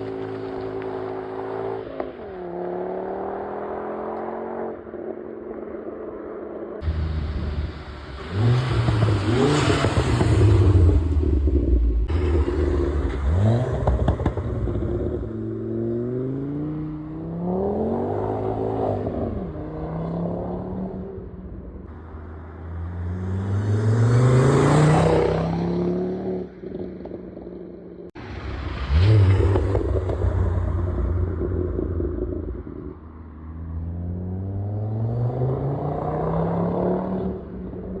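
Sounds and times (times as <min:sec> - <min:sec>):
car engine revving: 0:06.8 - 0:27.6, 0:28.2 - 0:38.0.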